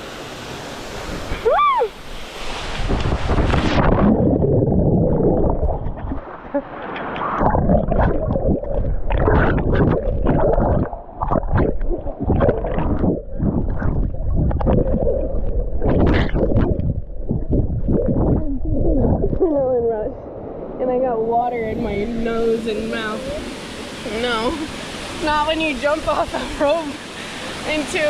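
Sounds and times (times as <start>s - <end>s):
water surging and bubbling: 0.0s - 28.0s
muffled underwater churning: 2.1s - 20.4s.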